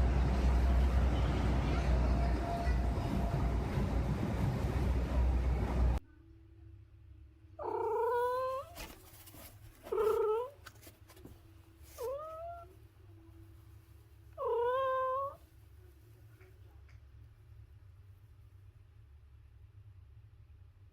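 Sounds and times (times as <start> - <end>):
cat meowing: 7.6 - 8.9, 9.9 - 10.6, 11.9 - 12.7, 14.4 - 15.4.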